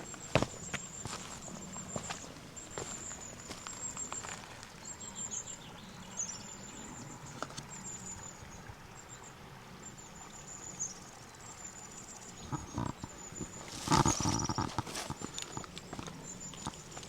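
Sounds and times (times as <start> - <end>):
soft footsteps on path: 0.0 - 4.9, 12.5 - 17.0
songbirds calling: 0.0 - 17.0.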